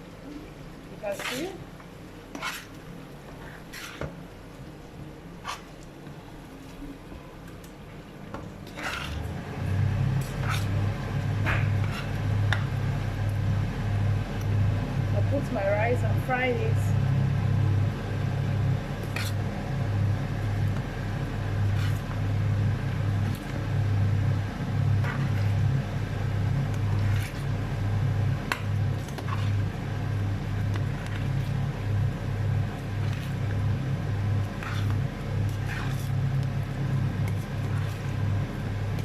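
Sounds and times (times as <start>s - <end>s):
loud steady low rumble: 9.2s - 39.0s
rice frying in oil: 18.0s - 39.0s.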